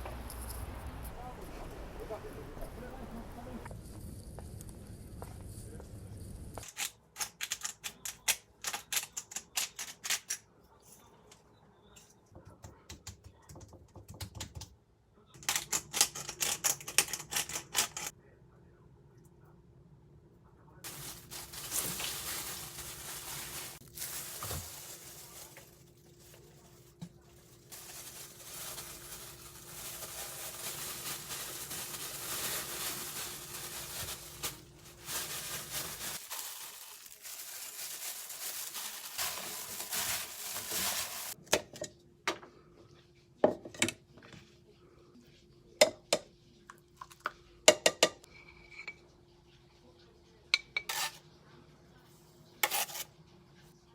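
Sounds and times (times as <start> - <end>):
rustling crinkling: 20.8 - 41.4
dishes and utensils clinking: 47.7 - 49.1.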